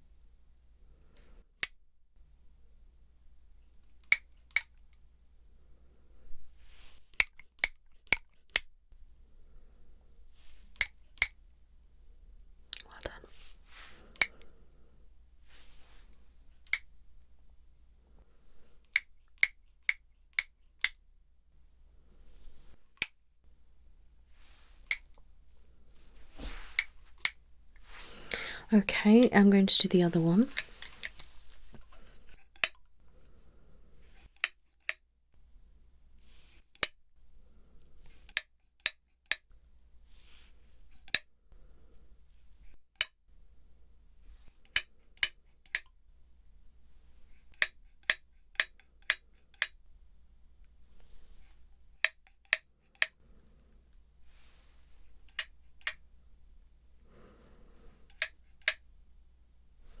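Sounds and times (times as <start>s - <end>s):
sharp bright clicks: 7.1s - 8.7s, 18.9s - 21.0s, 58.1s - 58.8s.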